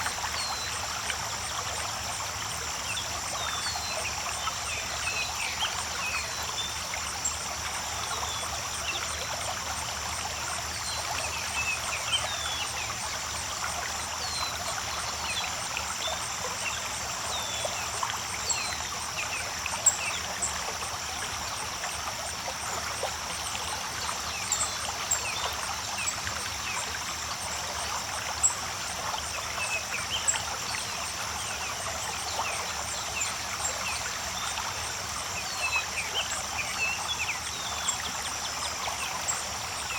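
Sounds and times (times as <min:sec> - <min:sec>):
creek water trickling: 0:00.0 - 0:39.9.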